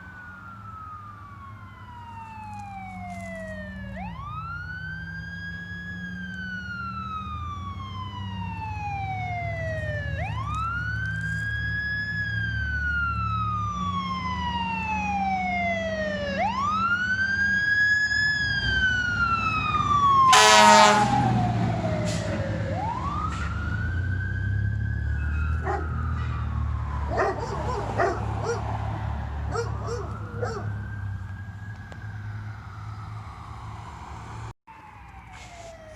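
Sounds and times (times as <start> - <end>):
emergency siren wailing: 0.0 - 35.9
vehicle engine drone: 0.0 - 35.9
horn blast: 20.3 - 21.4.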